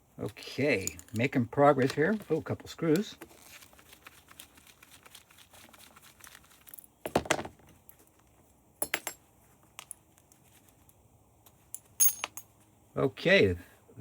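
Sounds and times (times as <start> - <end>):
metal parts and screws clinking: 0.8 - 1.3, 11.8 - 12.6.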